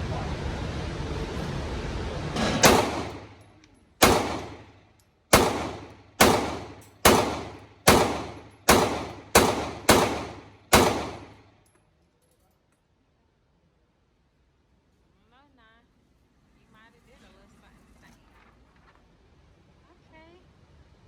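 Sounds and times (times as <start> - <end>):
pistol shots with ringing echo: 2.6 - 3.4, 4.0 - 11.5.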